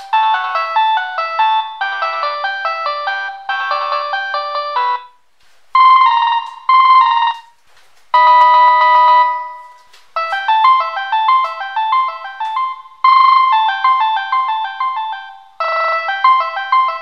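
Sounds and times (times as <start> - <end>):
polyphonic ringtone melody: 0.0 - 5.2, 5.8 - 7.5, 8.2 - 17.0.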